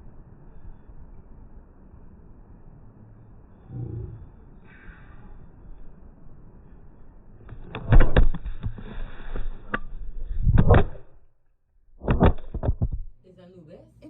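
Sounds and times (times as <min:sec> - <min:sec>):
phone being knocked and handled: 0:12.0 - 0:13.1.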